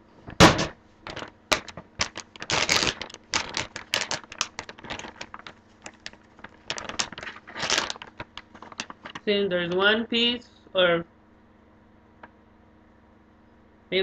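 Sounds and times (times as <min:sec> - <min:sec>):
plastic snack bag crinkling: 0:01.1 - 0:09.8.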